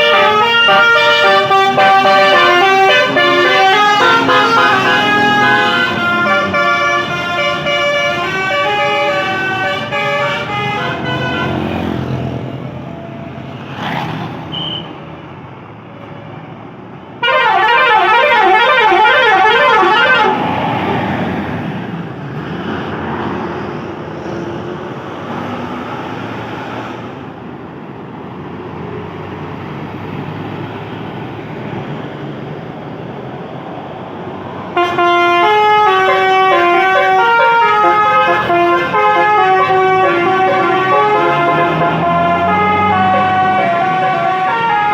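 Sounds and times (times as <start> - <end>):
multi-tone bus horn melodies: 0.0 - 12.0, 17.2 - 20.9, 34.7 - 44.9
bus engine: 0.0 - 44.9
traffic noise: 0.0 - 44.9.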